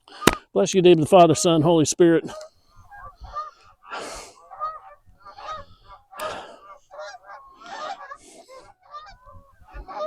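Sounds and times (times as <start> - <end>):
birds calling: 1.2 - 10.0.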